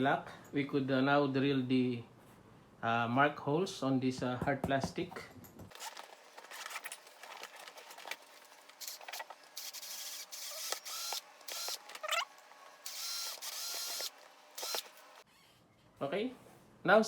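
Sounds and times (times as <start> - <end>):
power drill boring into plastic: 8.7 - 15.3.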